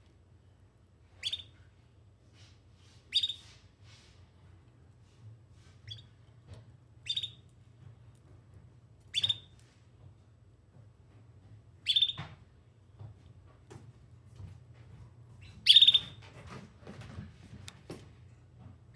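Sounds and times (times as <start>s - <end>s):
canary chirping: 1.2s - 1.5s, 3.1s - 3.4s, 7.0s - 7.5s, 9.1s - 9.5s, 11.8s - 12.2s, 15.4s - 16.2s.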